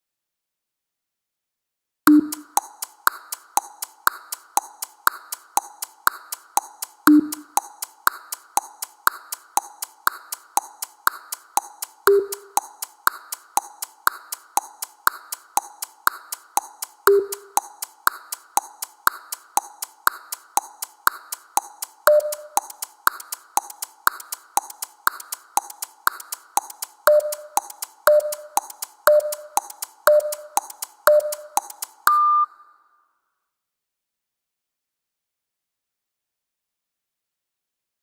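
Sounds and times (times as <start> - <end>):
electronic clock ticking: 2.1 - 32.7
short low beep: 32.1 - 32.8.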